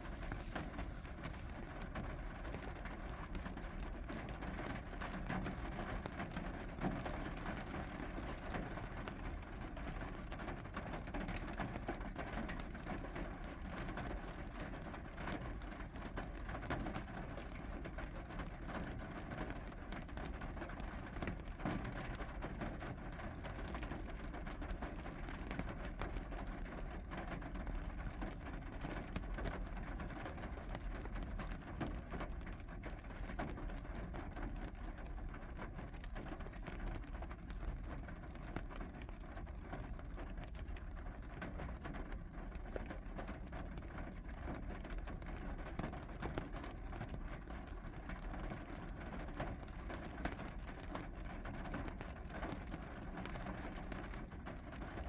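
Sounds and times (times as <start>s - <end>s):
steady rain falling: 23.8s - 55.0s.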